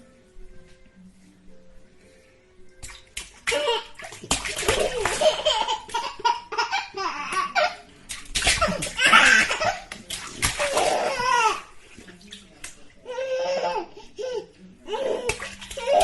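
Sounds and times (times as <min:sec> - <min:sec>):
water slaps: 0:02.8 - 0:06.1, 0:07.3 - 0:12.8, 0:15.2 - 0:16.0
water splashing in bathtub: 0:02.8 - 0:13.4, 0:14.9 - 0:16.0
baby laughing: 0:03.5 - 0:07.8, 0:08.5 - 0:10.0.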